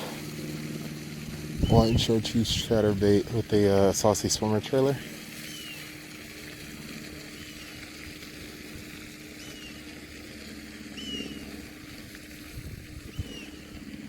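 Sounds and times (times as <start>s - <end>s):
steady low hum: 0.0s - 14.0s
bird chirping: 1.6s - 2.1s.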